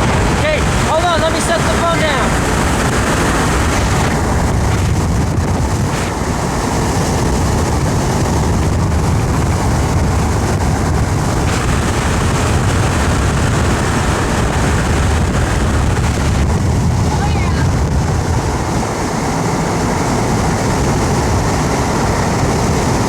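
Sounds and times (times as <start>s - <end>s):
road and engine rumble: 0.0s - 23.0s
wind rushing over microphone: 0.0s - 23.0s.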